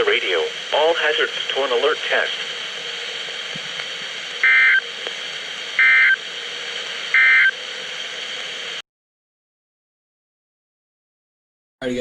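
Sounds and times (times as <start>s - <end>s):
radio hiss: 0.0s - 8.8s
shrill digital data bursts: 4.4s - 4.9s, 5.8s - 6.2s, 7.1s - 7.6s.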